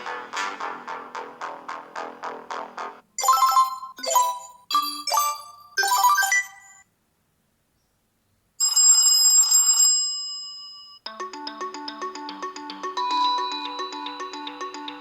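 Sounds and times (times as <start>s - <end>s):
chiming phone melody: 3.2s - 6.8s, 11.0s - 15.0s
repeating melodic ringtone: 3.2s - 6.8s, 11.1s - 15.0s.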